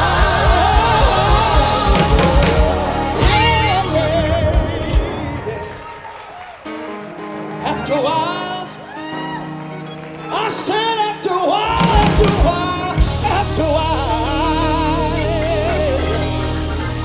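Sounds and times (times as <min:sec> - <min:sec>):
drum hits: 0:00.0 - 0:05.3
person singing: 0:00.0 - 0:06.0, 0:07.6 - 0:17.0
gospel band playing: 0:00.0 - 0:17.0.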